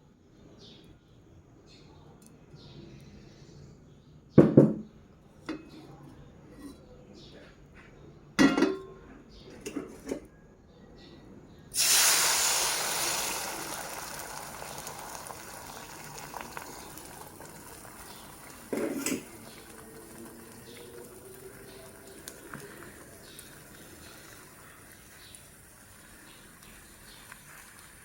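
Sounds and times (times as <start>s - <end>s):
kitchen clatter: 8.4s - 10.3s, 17.7s - 21.0s
loud hiss: 11.8s - 16.8s.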